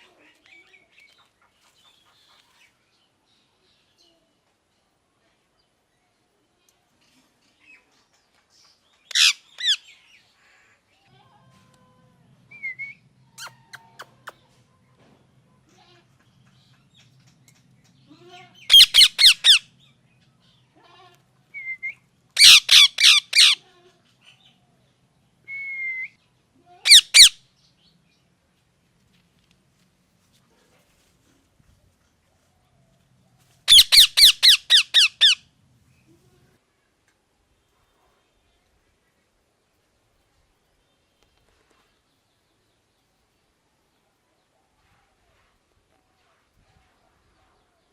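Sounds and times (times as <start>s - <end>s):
parrot squawking: 9.1s - 9.8s, 18.6s - 19.6s, 22.4s - 23.6s, 26.8s - 27.4s, 33.7s - 35.4s.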